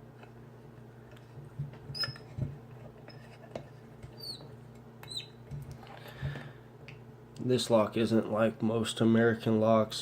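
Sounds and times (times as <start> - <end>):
low electrical hum: 0.0 - 10.0
metal on metal squeaks: 1.9 - 2.3, 4.2 - 4.5.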